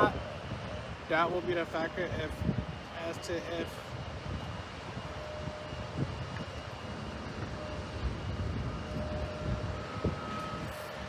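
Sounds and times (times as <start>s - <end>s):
high whine: 0.0s - 11.0s
jet engines rumbling: 0.0s - 11.0s
wind buffeting microphone: 0.0s - 11.0s.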